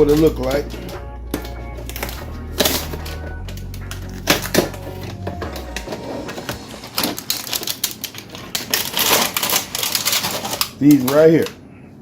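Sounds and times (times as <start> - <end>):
soft background music: 0.0 - 7.7
plastic packaging crinkling: 0.0 - 11.6.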